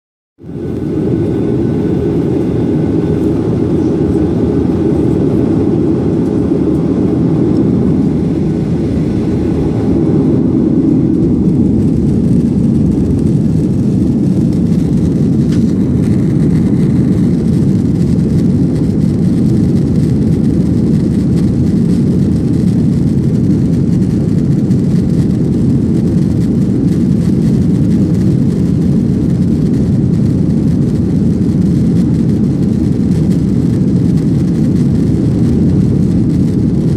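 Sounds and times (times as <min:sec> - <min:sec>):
jet engine noise in cabin: 0:00.4 - 0:36.9.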